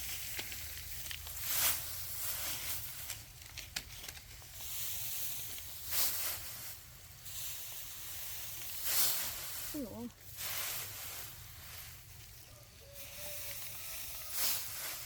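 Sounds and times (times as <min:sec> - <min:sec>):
dry rustling and swishing: 0:00.0 - 0:15.0.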